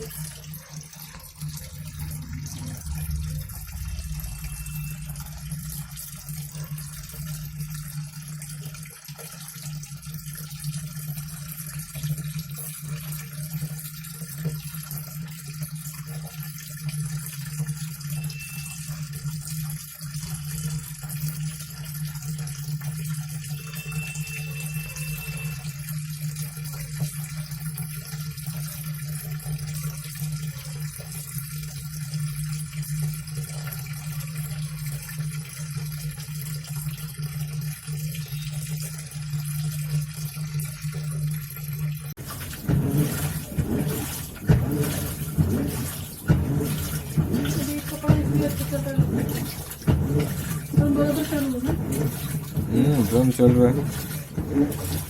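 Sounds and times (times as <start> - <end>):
low hum: 0.0 - 8.4
water pouring into washing machine: 0.0 - 55.0.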